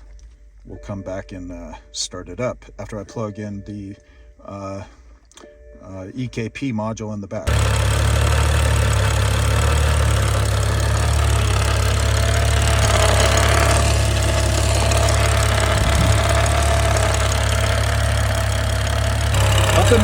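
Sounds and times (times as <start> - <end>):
car engine idling: 7.5 - 20.0
thin steady engine whine: 7.5 - 20.0.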